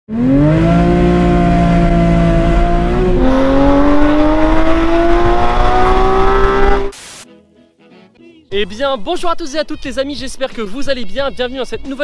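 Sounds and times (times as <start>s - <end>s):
car engine accelerating hard: 0.1s - 7.0s.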